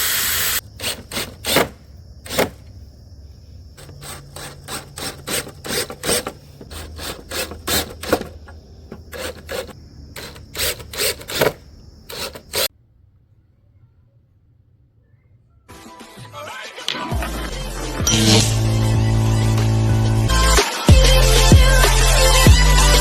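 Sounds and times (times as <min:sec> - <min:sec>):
hand rubbing across wood: 0:00.8 - 0:02.7, 0:03.8 - 0:12.7.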